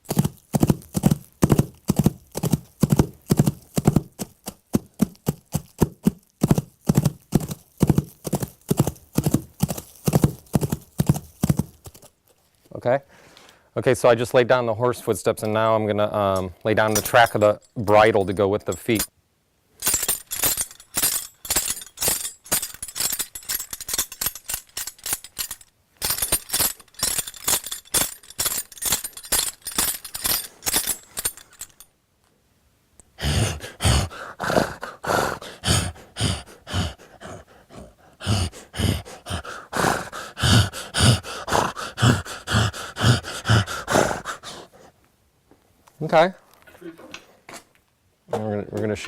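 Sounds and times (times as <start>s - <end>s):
heavy thumps: 0.0s - 12.0s
hoofbeats: 0.0s - 12.1s, 33.3s - 44.6s
bridle jingling and clinking: 0.0s - 12.2s, 16.8s - 19.1s, 19.8s - 32.0s, 40.4s - 43.7s.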